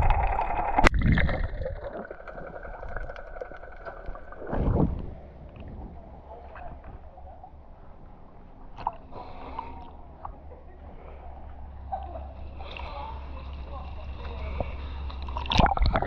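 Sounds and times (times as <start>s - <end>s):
water sloshing against hull: 0.0s - 16.0s
boat engine low rumble: 2.0s - 16.0s
loud thump or splash: 4.4s - 5.9s.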